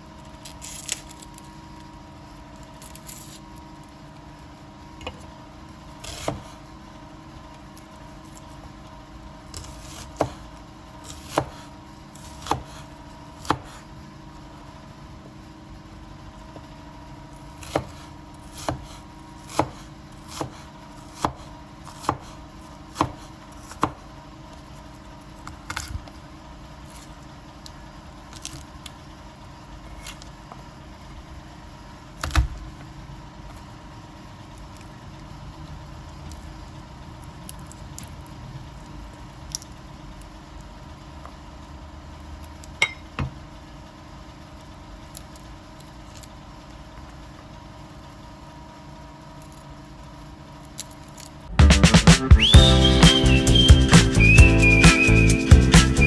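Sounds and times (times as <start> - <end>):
faint steady hum: 0.0 - 54.2
knife chopping on cutting board: 9.8 - 10.4, 11.1 - 11.7, 12.3 - 12.8, 13.4 - 13.8, 17.6 - 24.0.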